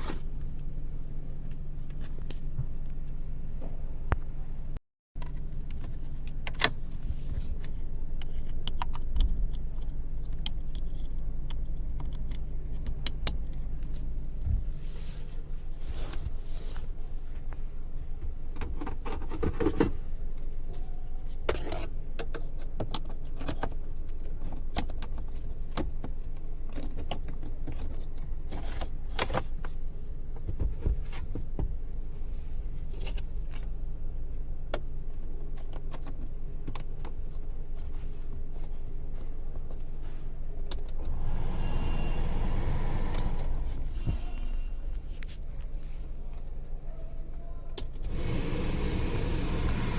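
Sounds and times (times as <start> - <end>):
blower motor humming: 41.0 - 44.1, 48.0 - 49.9
rushing of air: 41.0 - 44.2, 48.1 - 49.9.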